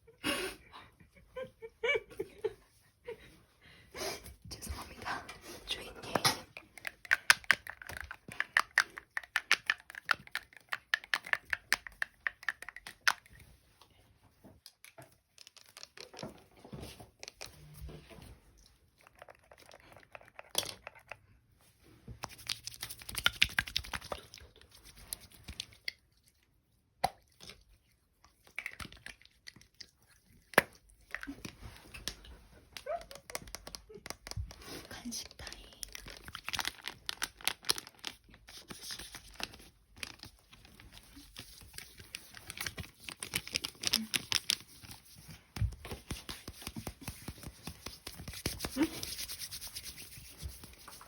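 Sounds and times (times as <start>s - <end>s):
close crinkling and tearing: 35.8s - 51.0s.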